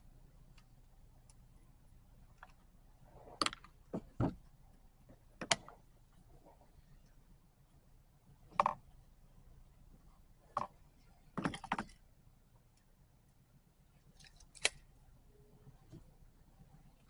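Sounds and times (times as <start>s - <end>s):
tools clicking and knocking: 11.4s - 12.0s.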